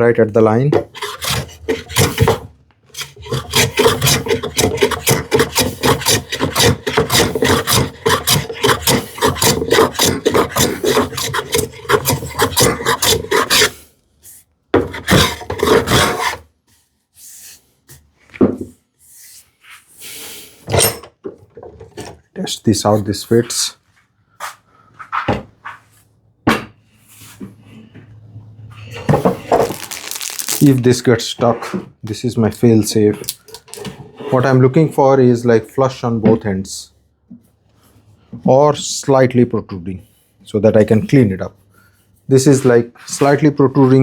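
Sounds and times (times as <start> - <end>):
hand plane strokes on wood: 0.8 - 13.8, 14.8 - 16.4.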